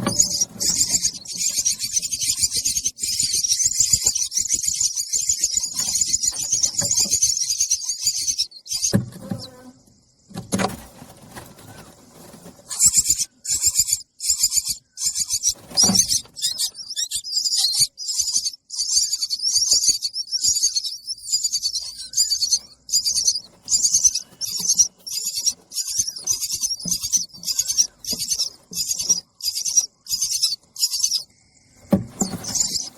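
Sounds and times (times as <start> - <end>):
nestling birds begging calls: 0.0 - 9.7, 10.6 - 32.9.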